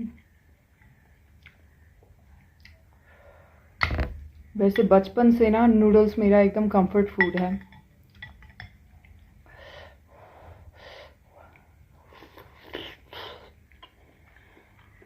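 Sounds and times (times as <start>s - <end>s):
person slurping noodles: 12.1s - 13.6s.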